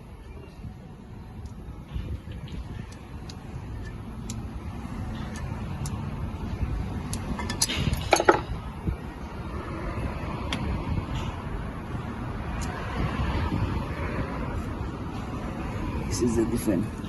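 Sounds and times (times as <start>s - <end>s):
metal tools clinking: 7.4s - 8.5s.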